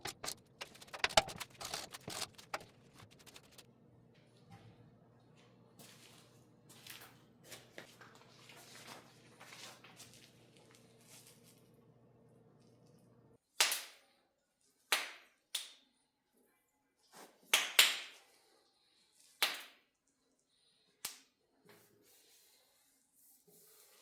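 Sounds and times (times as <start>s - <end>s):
faint steady hum: 0.0s - 13.4s.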